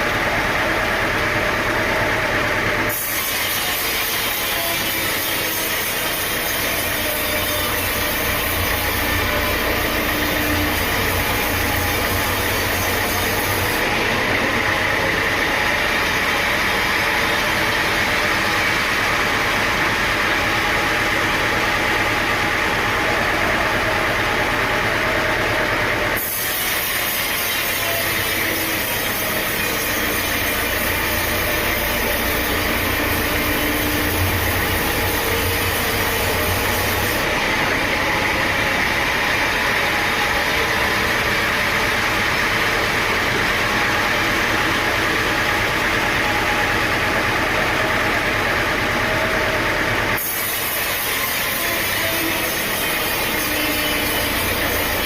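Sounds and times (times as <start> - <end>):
sawmill machinery din: 0.0 - 55.0.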